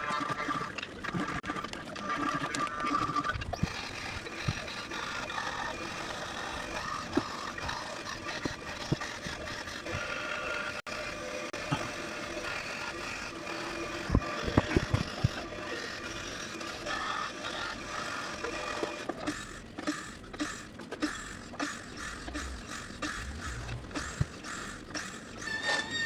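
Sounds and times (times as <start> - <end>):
power tool cutting wood: 0.0 - 20.0.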